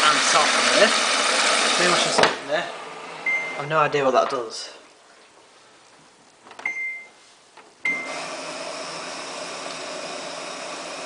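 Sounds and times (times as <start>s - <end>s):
water running into drum: 0.0s - 2.2s
washing machine beeps: 3.2s - 3.7s, 6.6s - 7.2s, 7.8s - 8.2s.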